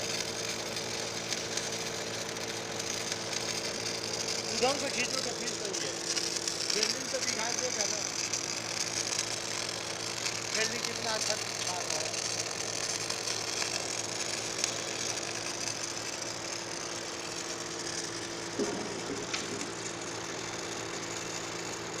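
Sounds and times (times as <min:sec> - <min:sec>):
welding arc crackling: 0:00.0 - 0:22.0.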